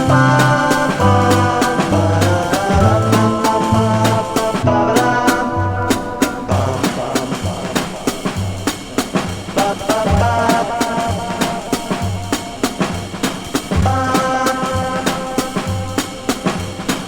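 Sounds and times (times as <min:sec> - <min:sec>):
bass notes: 0:00.0 - 0:06.0
drum kit beat: 0:00.0 - 0:17.0
indie pop instrumental: 0:00.0 - 0:17.0.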